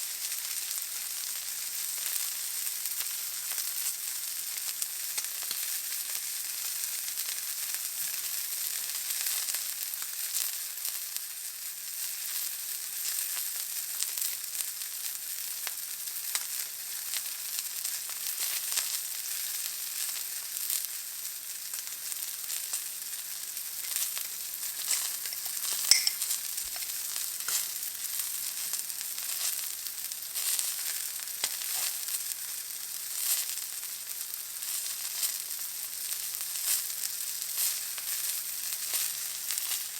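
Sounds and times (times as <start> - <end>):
steak sizzling in a pan: 0.0 - 39.9
fat crackling and spitting: 23.5 - 28.8.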